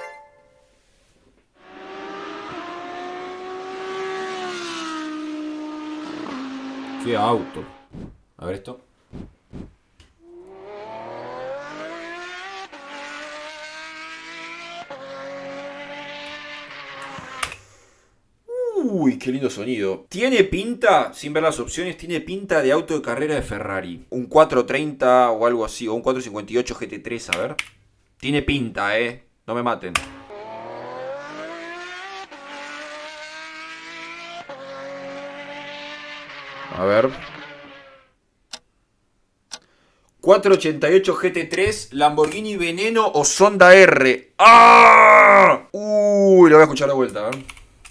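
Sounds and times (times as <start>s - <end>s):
race car engine accelerating: 1.6s - 8.0s, 10.2s - 17.6s, 30.0s - 38.1s
gear changes: 1.6s - 8.3s, 9.1s - 17.7s, 29.8s - 38.7s.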